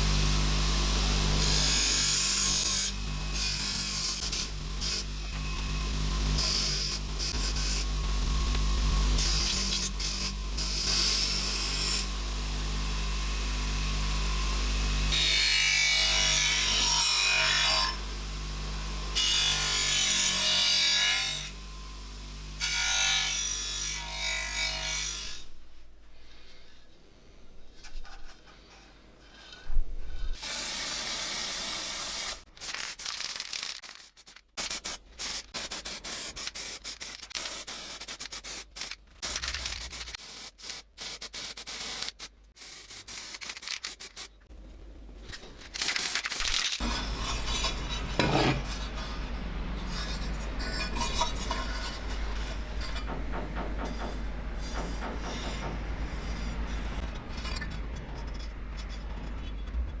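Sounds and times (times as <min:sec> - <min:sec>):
steady low hum: 0:46.8 - 1:00.0.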